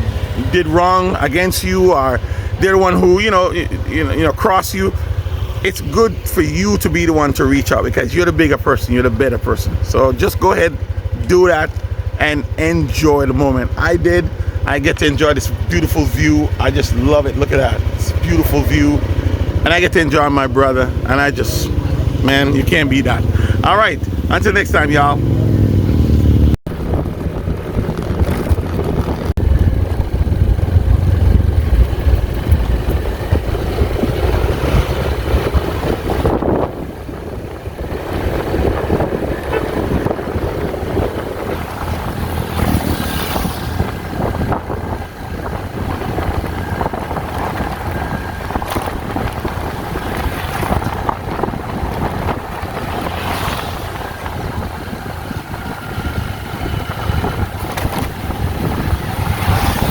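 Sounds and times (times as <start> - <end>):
vehicle motor running: 0.0 - 59.9
wind rushing over microphone: 0.0 - 59.9.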